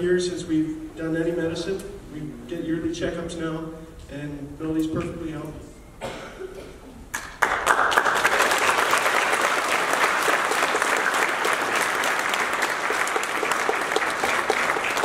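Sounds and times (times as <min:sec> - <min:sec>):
large audience applauding: 0:07.1 - 0:15.0.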